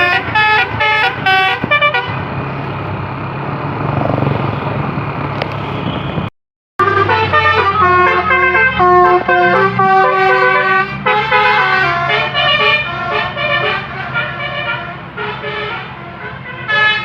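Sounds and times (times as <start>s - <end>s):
musical bus horn playing a tune: 0.0s - 2.3s, 6.8s - 17.0s.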